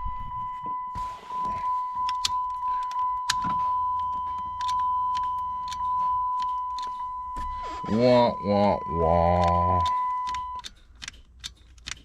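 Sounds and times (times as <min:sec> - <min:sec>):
high-pitched electronic tone: 0:00.0 - 0:10.6
ignition clicks: 0:01.3 - 0:07.6, 0:09.4 - 0:12.0.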